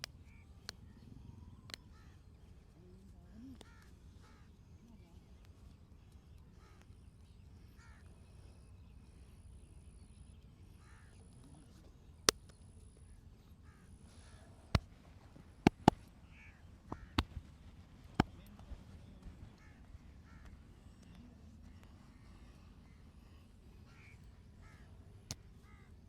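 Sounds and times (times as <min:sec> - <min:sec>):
joint cracking: 0:14.7 - 0:16.1, 0:16.9 - 0:18.6.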